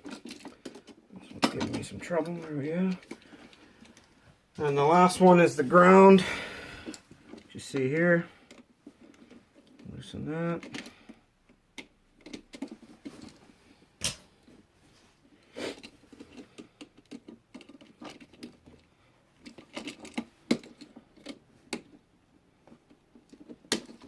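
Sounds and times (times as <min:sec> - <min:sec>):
clicks and scrapes of plastic: 0:00.0 - 0:04.1, 0:10.6 - 0:14.6, 0:15.4 - 0:24.0.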